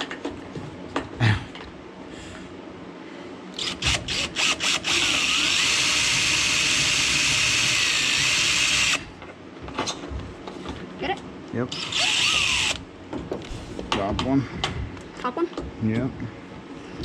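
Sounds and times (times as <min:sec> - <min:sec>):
power drill whirring: 0:03.6 - 0:09.1, 0:11.7 - 0:12.8.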